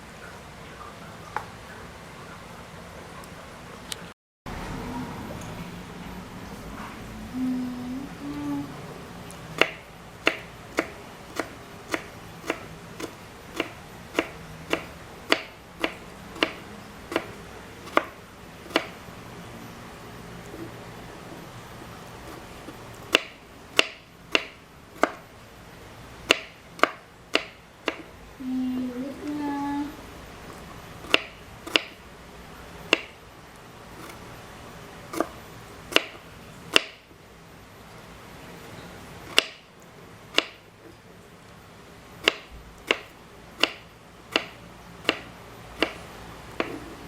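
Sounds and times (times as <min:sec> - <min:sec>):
knife chopping on cutting board: 0:09.6 - 0:19.0, 0:22.2 - 0:25.2, 0:26.2 - 0:28.1, 0:31.0 - 0:32.0, 0:32.9 - 0:33.2, 0:35.1 - 0:37.0, 0:40.3 - 0:40.6, 0:42.2 - 0:46.0, 0:46.6 - 0:46.9.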